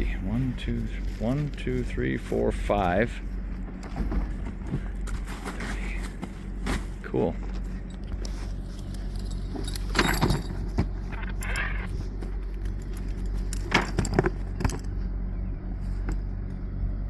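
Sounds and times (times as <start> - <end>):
low engine hum: 0.0 - 17.0
metallic jingles and clinks: 7.8 - 15.0.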